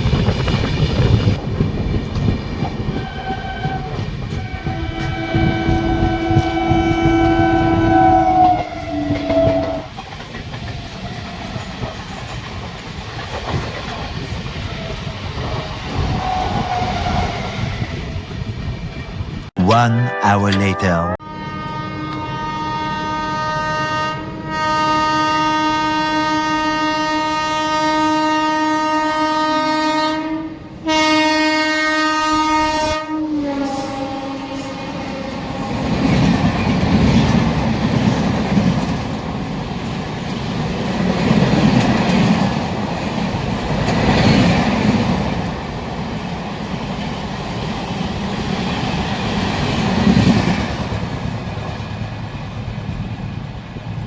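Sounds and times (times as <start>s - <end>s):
train wheels clickety-clack: 0.0s - 19.1s, 35.5s - 53.3s
locomotive horn blowing: 3.0s - 9.9s, 19.9s - 35.8s.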